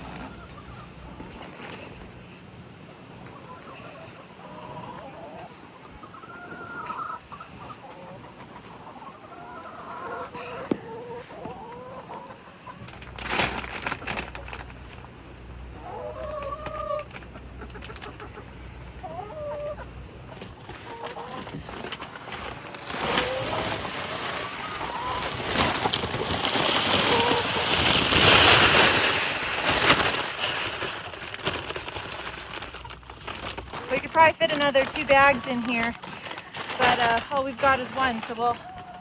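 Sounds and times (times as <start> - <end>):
chickens clucking: 0.0 - 39.0
low steady hum: 0.0 - 39.0
loud rustle: 12.8 - 15.6, 20.0 - 38.6.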